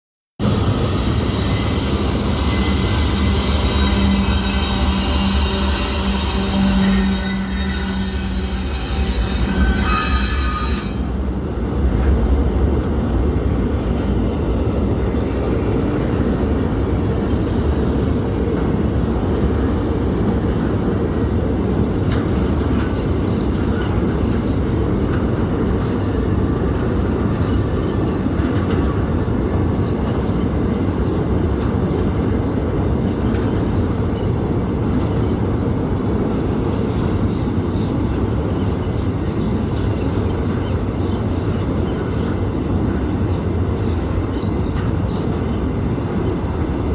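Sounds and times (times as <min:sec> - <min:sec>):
high wheel squeal: 0:00.4 - 0:11.6
train wheels rumbling on rails: 0:00.4 - 0:46.9.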